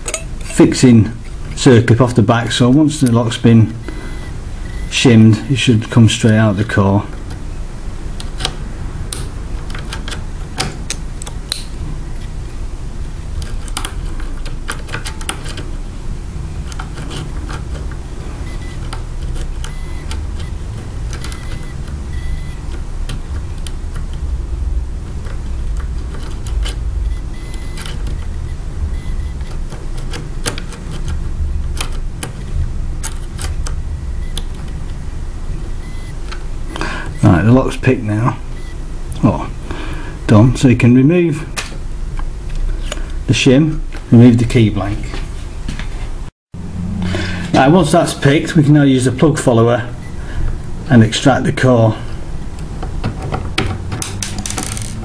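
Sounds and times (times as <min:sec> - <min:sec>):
steady low hum: 0:00.0 - 0:55.0
low rumble: 0:15.7 - 0:30.4, 0:31.0 - 0:36.7, 0:45.4 - 0:50.9.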